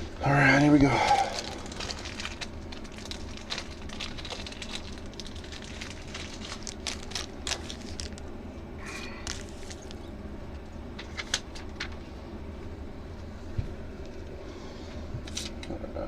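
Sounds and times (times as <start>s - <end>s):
foil wrappers crinkling: 0.0s - 10.1s, 11.0s - 12.0s
low steady hum: 0.0s - 16.0s.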